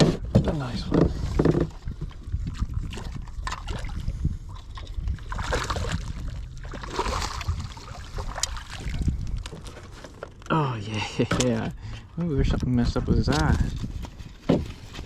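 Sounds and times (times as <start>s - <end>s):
wind rumble on microphone: 0.0s - 10.1s, 11.5s - 15.0s
water splashing against boat: 0.0s - 10.4s.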